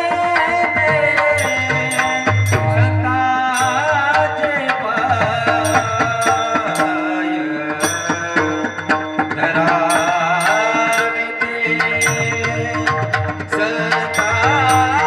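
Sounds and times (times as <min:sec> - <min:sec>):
held accompanying tones: 0:00.2 - 0:15.0
person singing melody: 0:09.4 - 0:15.0.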